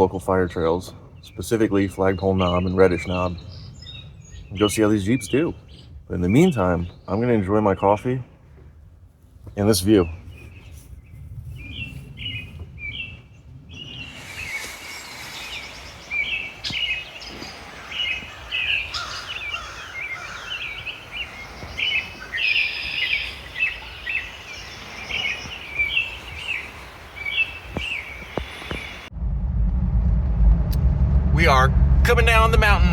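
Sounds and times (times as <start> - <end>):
songbirds chirping and singing: 0.0 - 8.2, 11.6 - 29.1.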